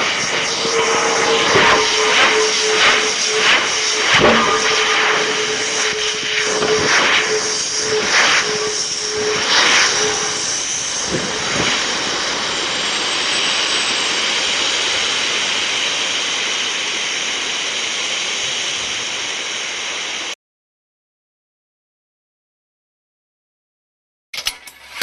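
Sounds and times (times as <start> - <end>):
high-pressure gas hissing: 0.0 - 12.0.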